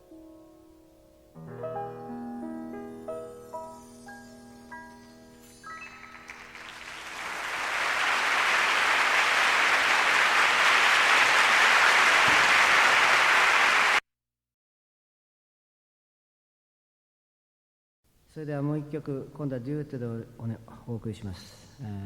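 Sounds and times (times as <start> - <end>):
audience applause: 6.1 - 14.0.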